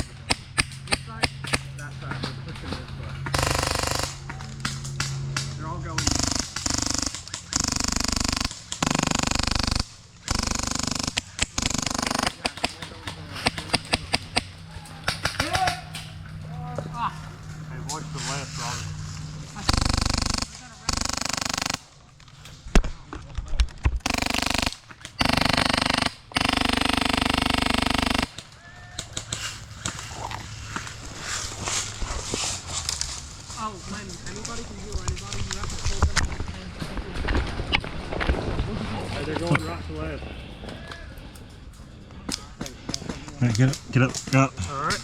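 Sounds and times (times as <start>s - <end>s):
airsoft guns firing bursts: 0.0s - 1.8s, 3.2s - 16.1s, 19.6s - 22.1s, 24.0s - 31.6s
outdoor ambience: 0.0s - 45.0s.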